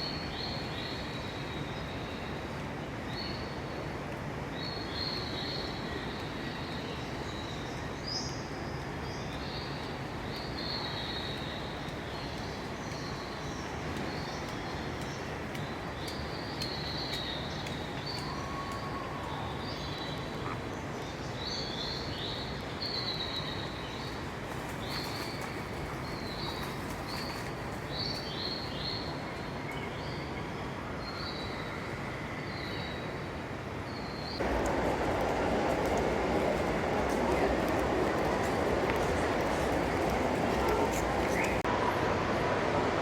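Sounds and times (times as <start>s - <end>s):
birds chirping: 34.2s - 41.7s
steady rushing noise: 34.4s - 43.0s.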